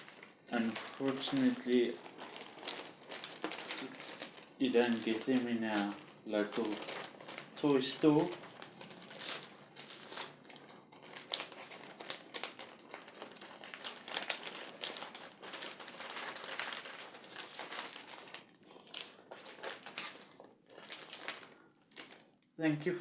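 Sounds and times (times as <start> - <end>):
packaging crinkling and rustling: 0.0 - 22.3.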